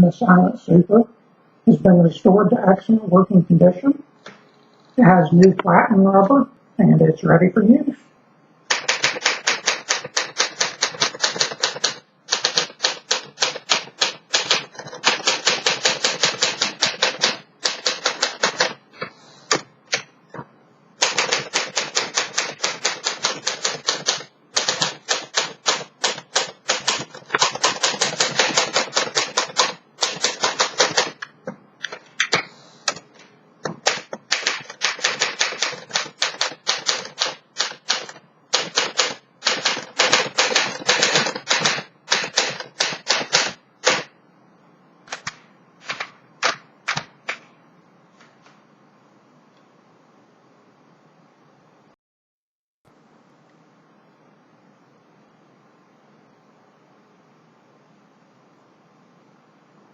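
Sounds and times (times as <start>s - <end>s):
typewriter keystrokes: 8.7s - 18.8s, 21.0s - 33.0s, 33.6s - 44.1s, 45.1s - 47.4s.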